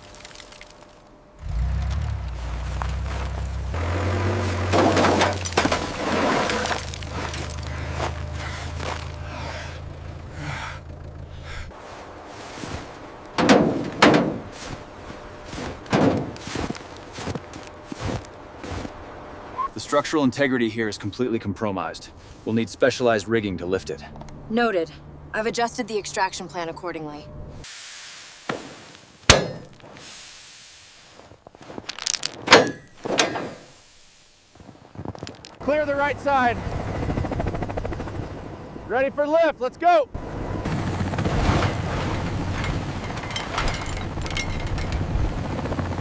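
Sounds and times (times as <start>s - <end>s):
low hum: 0.0s - 19.8s, 40.1s - 46.0s
heavy thuds: 12.9s - 14.8s, 15.5s - 18.2s
clinking and knocking: 31.8s - 33.4s, 42.3s - 45.3s.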